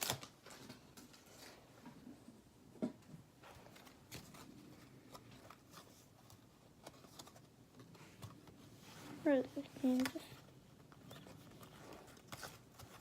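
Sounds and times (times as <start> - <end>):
trading cards clicking and rustling: 9.6 - 13.0.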